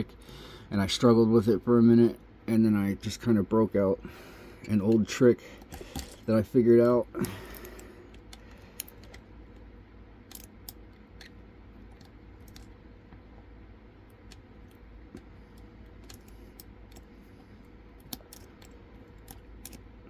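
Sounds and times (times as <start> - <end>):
steady low hum: 0.0 - 20.0
lock pick clicking: 10.2 - 11.3, 14.2 - 17.1, 18.0 - 19.9.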